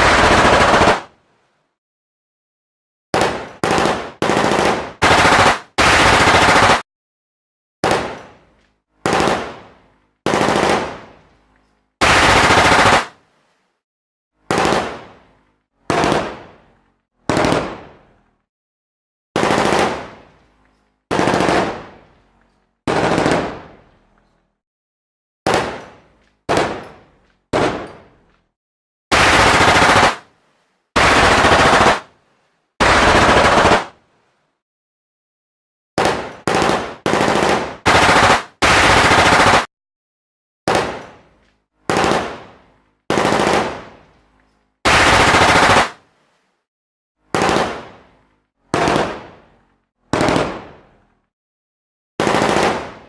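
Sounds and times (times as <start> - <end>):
machine gun firing bursts: 0.0 - 1.1, 3.2 - 6.8, 9.0 - 9.6, 10.2 - 11.0, 12.0 - 13.2, 14.5 - 15.1, 15.9 - 16.4, 17.3 - 17.8, 19.4 - 20.2, 21.1 - 22.0, 22.9 - 23.7, 29.1 - 30.2, 31.0 - 32.1, 32.8 - 34.0, 36.0 - 39.7, 41.9 - 42.4, 43.1 - 43.9, 44.9 - 46.0, 47.3 - 47.9, 48.7 - 49.3, 50.1 - 50.7, 52.2 - 53.0.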